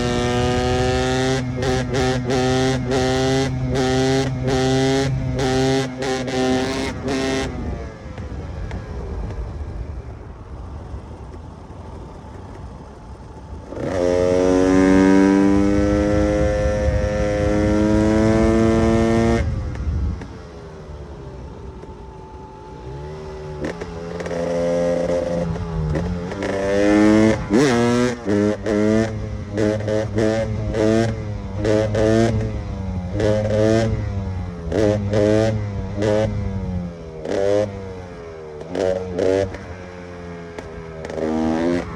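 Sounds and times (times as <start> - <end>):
two-stroke engine revving: 0.0 - 9.5, 13.4 - 41.9.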